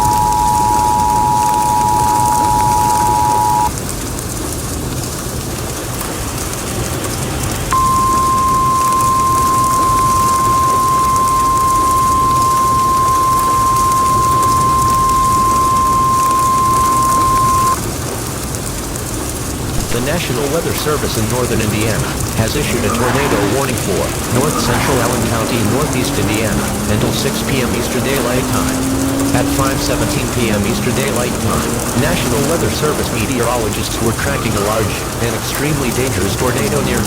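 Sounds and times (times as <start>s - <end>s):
steady warning alarm tone: 0.0s - 3.7s, 7.8s - 17.8s, 21.4s - 33.7s
two-tone attention signal: 0.0s - 3.7s, 7.8s - 17.8s, 21.8s - 33.6s
rain hiss: 0.0s - 37.0s.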